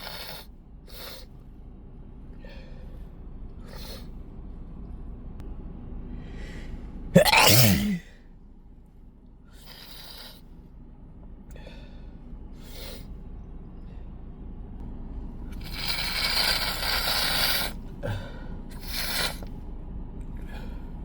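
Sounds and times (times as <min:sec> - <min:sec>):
congested nose sniffing: 0:00.0 - 0:01.3, 0:03.6 - 0:04.1, 0:09.6 - 0:10.4, 0:12.6 - 0:13.1, 0:15.6 - 0:17.8, 0:18.8 - 0:19.5
hissing bursts: 0:15.6 - 0:17.8, 0:18.8 - 0:19.4.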